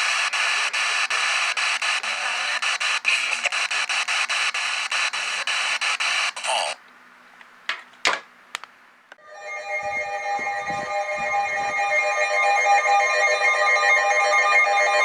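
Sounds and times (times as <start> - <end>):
radio receiver hiss and static: 0.0 - 6.8.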